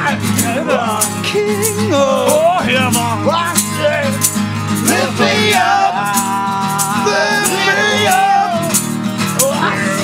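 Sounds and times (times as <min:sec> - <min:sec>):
high percussion strokes: 0:00.2 - 0:10.0.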